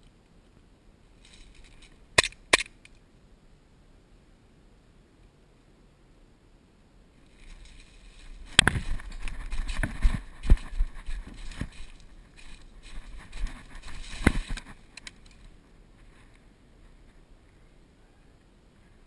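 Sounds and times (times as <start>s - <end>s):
rustling: 1.1s - 3.0s, 7.2s - 17.7s.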